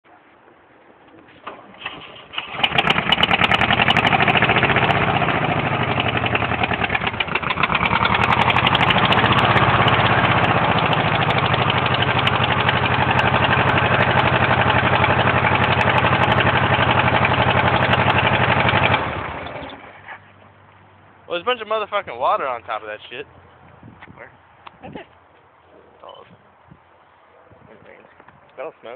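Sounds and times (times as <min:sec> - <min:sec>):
engine cranking and starting: 0:01.3 - 0:19.9
engine running with fast knock: 0:02.4 - 0:19.8.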